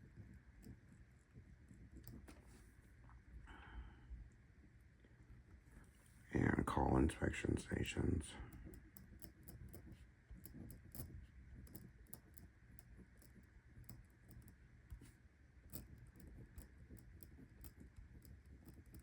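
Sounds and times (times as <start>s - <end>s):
low background hum: 0.0s - 19.0s.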